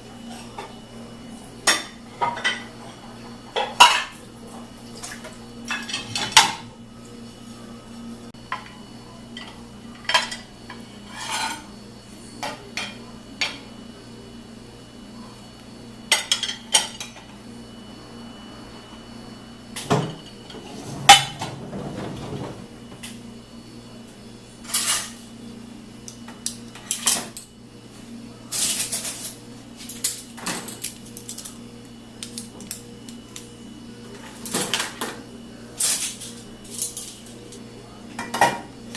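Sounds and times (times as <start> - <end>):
steady low hum: 0.0 - 38.9
dishes and cutlery clinking: 5.7 - 6.7, 9.4 - 11.7.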